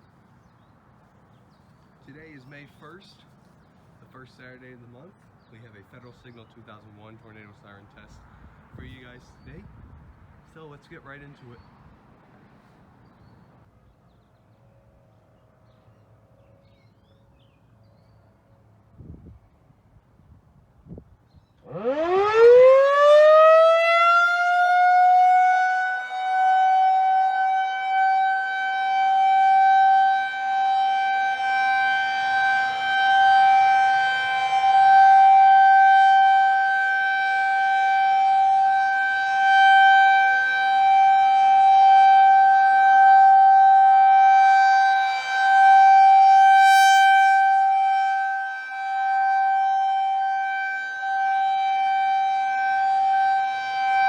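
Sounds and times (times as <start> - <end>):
rotating warning siren: 21.5 - 54.0.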